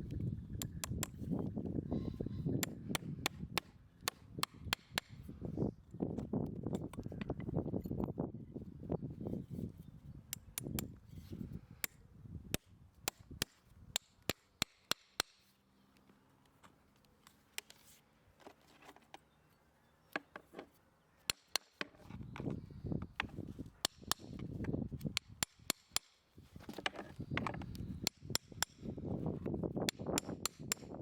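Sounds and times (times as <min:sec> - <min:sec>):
tools clicking on horse hoof: 0:00.1 - 0:01.4, 0:02.6 - 0:05.3, 0:06.2 - 0:08.1, 0:10.3 - 0:11.2, 0:11.8 - 0:15.5, 0:21.3 - 0:31.0.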